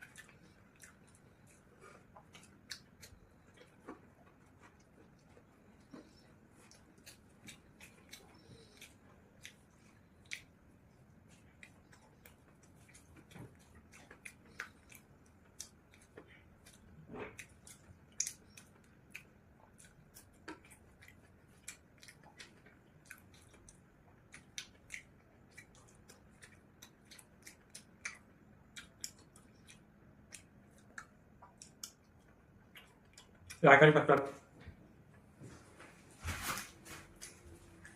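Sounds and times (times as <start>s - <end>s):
person crunching food: 5.9s - 10.5s.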